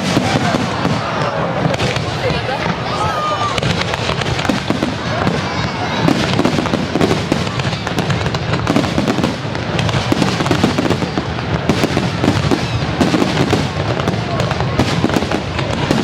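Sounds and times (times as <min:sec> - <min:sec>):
fireworks crackling and popping: 0:00.0 - 0:16.0.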